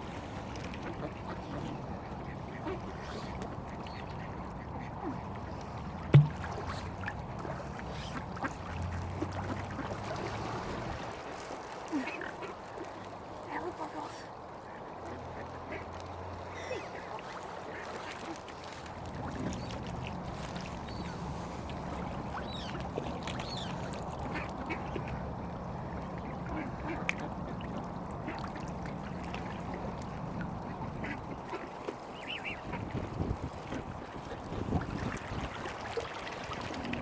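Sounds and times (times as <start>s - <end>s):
ducks quacking: 30.7s - 31.6s.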